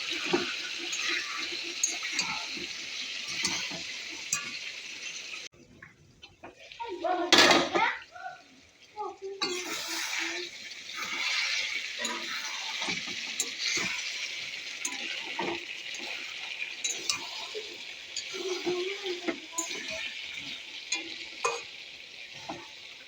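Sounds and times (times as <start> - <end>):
meat sizzling in a pan: 0.0 - 5.5, 6.2 - 23.0
spatula clinking against pan: 0.1 - 4.7, 10.9 - 22.7.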